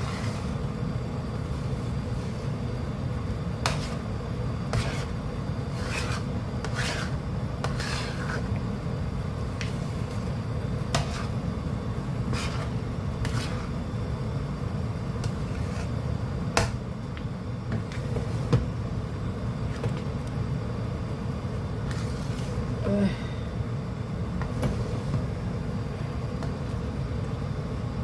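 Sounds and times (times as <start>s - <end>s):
spatula scraping a pot: 0.0s - 0.6s, 3.6s - 8.6s, 9.5s - 11.4s, 12.2s - 13.8s, 15.2s - 16.8s, 21.8s - 22.7s.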